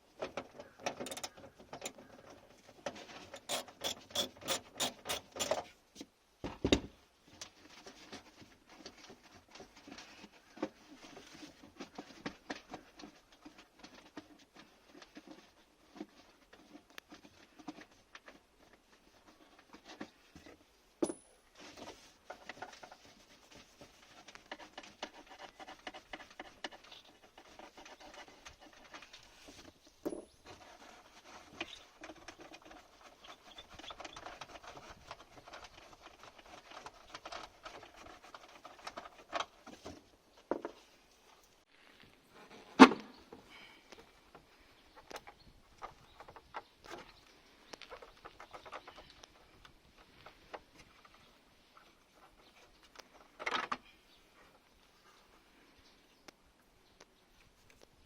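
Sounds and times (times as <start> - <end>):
plastic parts rubbing: 0.1 - 5.8, 21.6 - 55.7.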